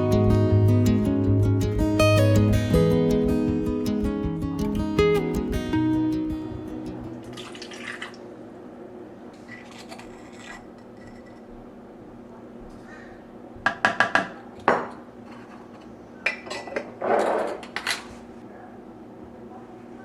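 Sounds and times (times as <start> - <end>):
kitchenware clinking and knocking: 13.7 - 15.7, 16.3 - 18.1.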